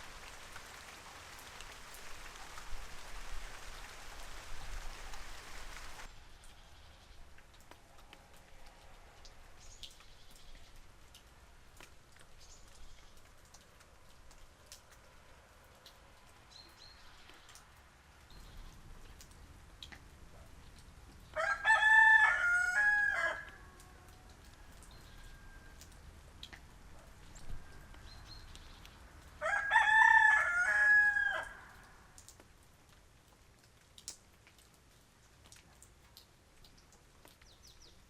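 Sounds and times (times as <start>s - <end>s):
light rain dripping: 0.0s - 38.0s
rooster crowing: 21.4s - 25.8s, 29.4s - 31.8s.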